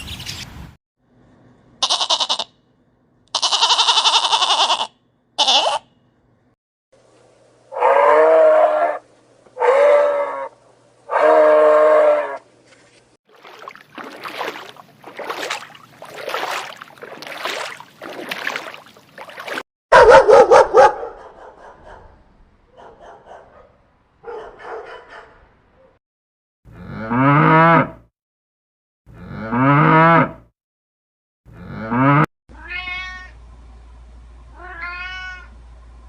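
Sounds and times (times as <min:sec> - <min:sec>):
animal calls: 0:09.6 - 0:12.4.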